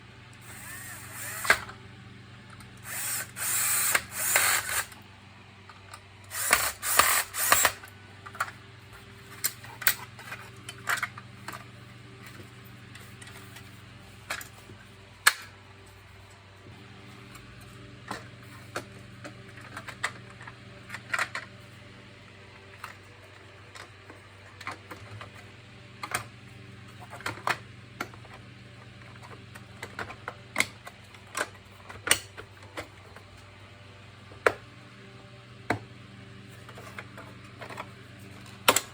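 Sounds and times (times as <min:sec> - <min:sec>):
power screwdriver running: 0:00.4 - 0:01.7, 0:02.8 - 0:05.0, 0:06.3 - 0:07.8.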